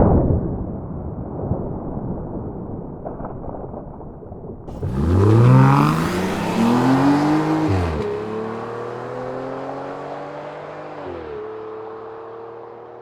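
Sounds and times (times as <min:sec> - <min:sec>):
engine-like revving: 0:04.7 - 0:12.1.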